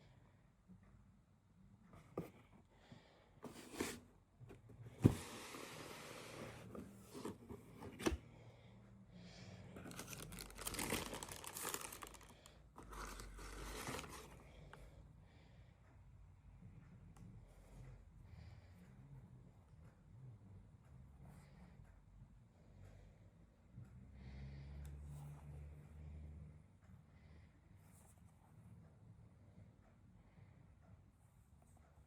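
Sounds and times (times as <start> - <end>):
paper packaging crinkling: 9.8 - 14.3.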